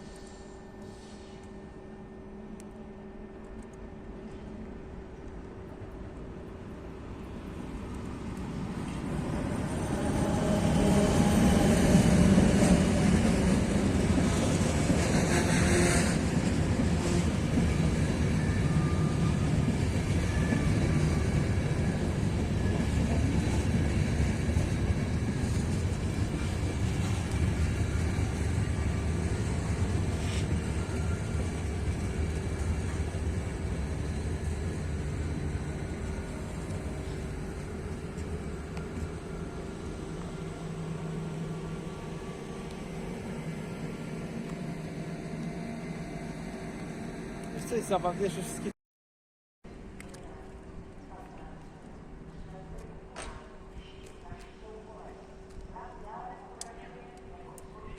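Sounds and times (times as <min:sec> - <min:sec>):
train wheels rumbling on rails: 0:03.4 - 0:45.9.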